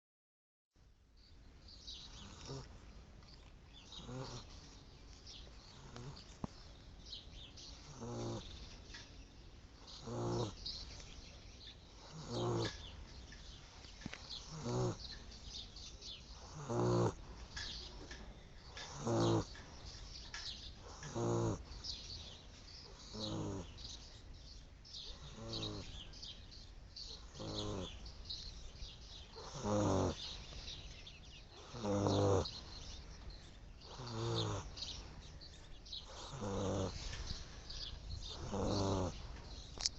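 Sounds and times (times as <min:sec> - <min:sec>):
small dog snoring: 0:02.0 - 0:02.8, 0:03.8 - 0:04.8, 0:05.6 - 0:06.5, 0:07.7 - 0:08.6, 0:09.8 - 0:10.7, 0:11.9 - 0:12.9, 0:14.0 - 0:15.1, 0:16.3 - 0:18.0, 0:18.7 - 0:19.7, 0:20.8 - 0:22.0, 0:22.8 - 0:24.0, 0:25.0 - 0:26.0, 0:27.1 - 0:28.0, 0:29.3 - 0:30.6, 0:31.6 - 0:32.9, 0:33.8 - 0:35.2, 0:35.9 - 0:39.5.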